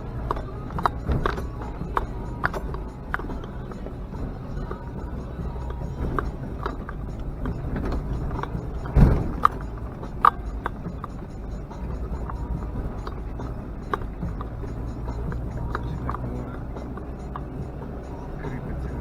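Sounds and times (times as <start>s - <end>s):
off-road vehicle engine and road rumble: 0.0s - 19.0s
body knocks and rattles: 5.6s - 16.3s
heavy thump: 7.4s - 9.6s.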